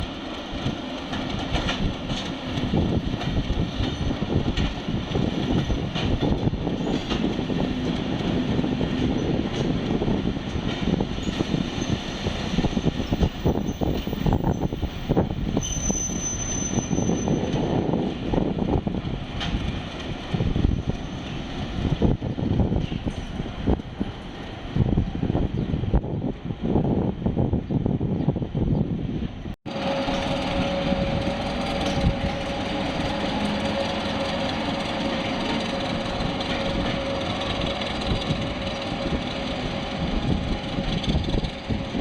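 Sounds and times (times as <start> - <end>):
diesel locomotive engine rumbling: 0.0 - 42.0
high-pitched wheel squeal: 12.7 - 17.8, 29.8 - 38.4
wheels clattering over rails: 29.7 - 42.0.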